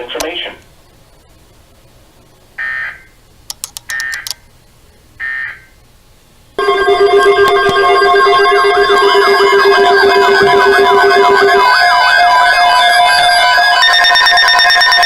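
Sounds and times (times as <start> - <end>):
sharp clicks: 3.5 - 4.4
digital data tone bursts: 6.6 - 15.0
warbling siren-like warning tones: 6.6 - 15.0.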